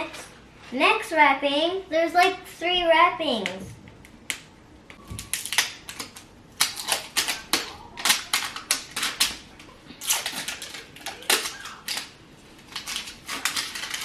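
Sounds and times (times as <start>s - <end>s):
plastic wrapping crinkling and tearing: 5.0s - 14.0s.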